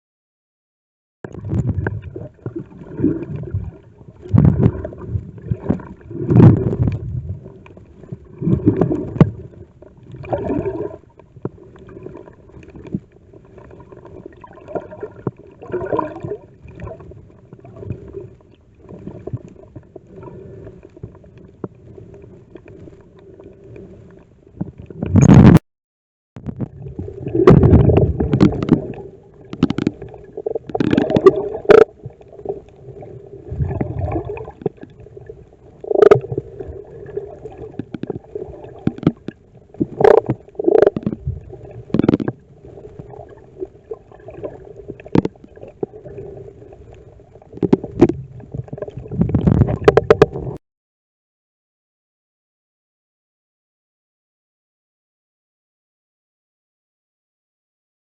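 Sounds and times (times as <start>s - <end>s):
low underwater rumble: 1.2s - 25.6s, 26.4s - 50.6s
underwater gurgling and bubbling: 1.2s - 25.6s, 26.4s - 50.6s.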